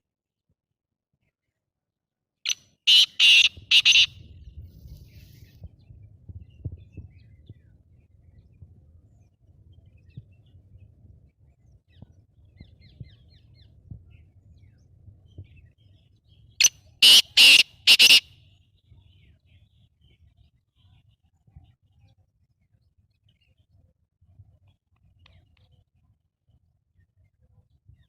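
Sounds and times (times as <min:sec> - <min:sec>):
bird harsh call: 0:02.9 - 0:04.2, 0:17.0 - 0:18.3
faint low rumble: 0:03.6 - 0:16.6.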